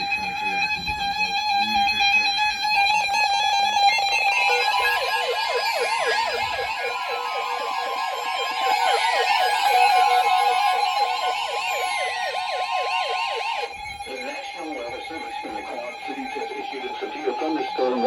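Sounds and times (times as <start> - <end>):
steady high tone: 0.0 - 18.0.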